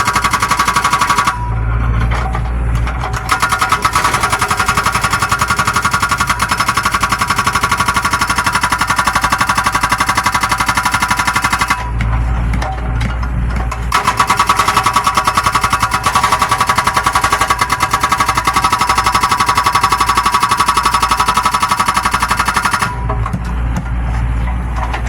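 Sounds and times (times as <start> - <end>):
hydraulic breaker hammering: 0.0 - 25.0
excavator engine rumble: 1.5 - 3.3, 11.9 - 13.9, 23.0 - 25.0.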